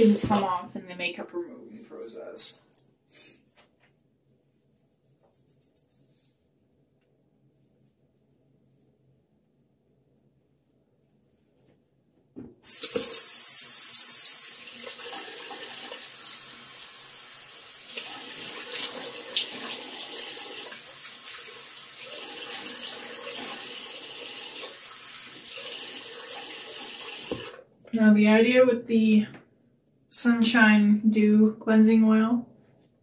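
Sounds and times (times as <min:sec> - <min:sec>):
tap water running into sink: 0:12.6 - 0:27.6.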